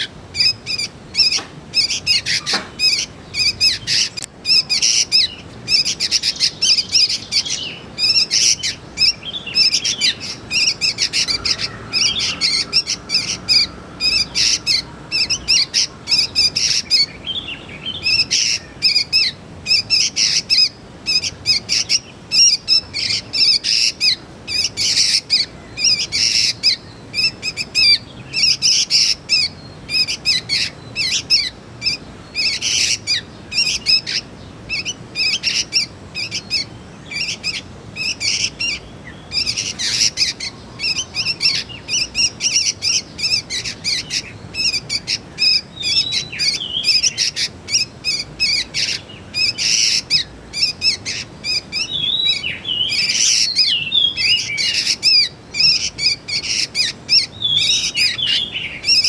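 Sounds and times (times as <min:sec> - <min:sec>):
birds chirping rapidly: 0:00.0 - 0:59.0
bird gliding notes: 0:07.0 - 0:17.1.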